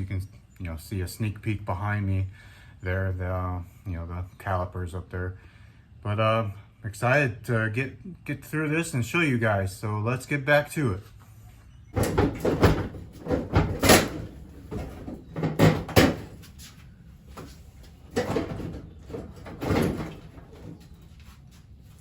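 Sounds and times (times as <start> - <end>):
car parts knocking and rattling: 12.0 - 22.0.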